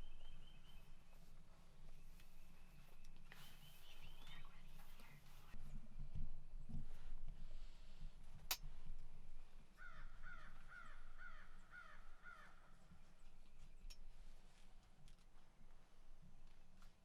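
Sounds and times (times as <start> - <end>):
crow cawing: 9.8 - 12.6.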